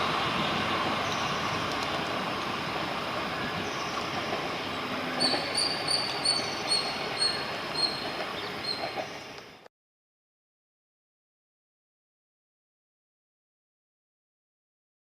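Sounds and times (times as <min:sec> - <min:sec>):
train rumbling: 0:00.0 - 0:09.7.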